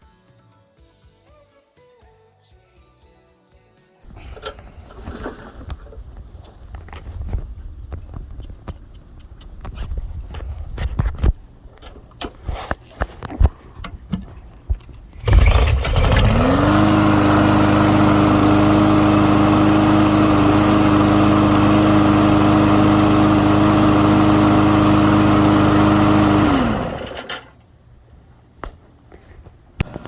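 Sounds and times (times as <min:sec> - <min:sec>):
pull-start clicks and knocks: 0:04.1 - 0:06.0, 0:10.8 - 0:27.5
lawn mower engine running: 0:04.1 - 0:09.6, 0:11.4 - 0:12.8, 0:13.8 - 0:27.6.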